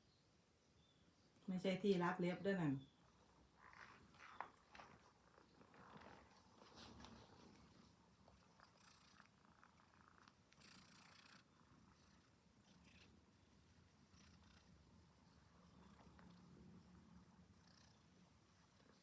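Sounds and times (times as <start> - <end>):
cat purring: 2.9 - 19.0
rustling: 3.1 - 11.1.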